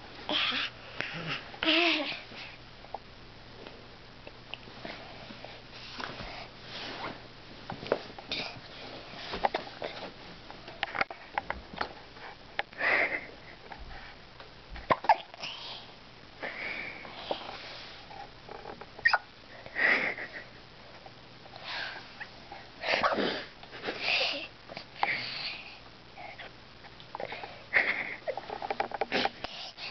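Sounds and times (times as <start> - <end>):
hiccups: 19.0 - 19.3.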